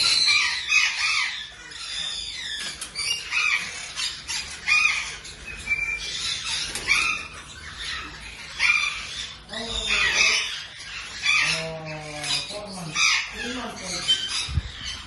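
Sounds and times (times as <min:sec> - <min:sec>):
caged birds chirping and squawking: 0:00.0 - 0:15.0.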